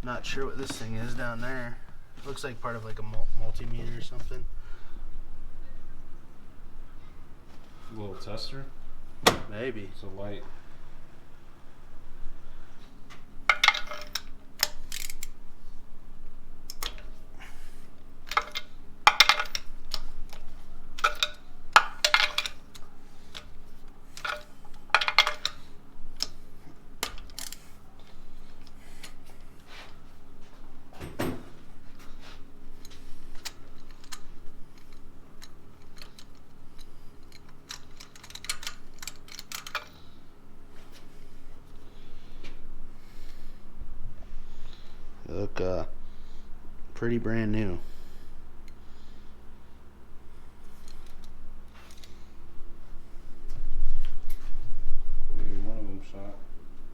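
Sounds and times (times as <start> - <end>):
faint steady hum: 0.0 - 56.9
metal parts and tools clinking: 13.4 - 15.4, 16.7 - 17.2, 18.2 - 30.1, 30.9 - 40.2, 50.7 - 52.2.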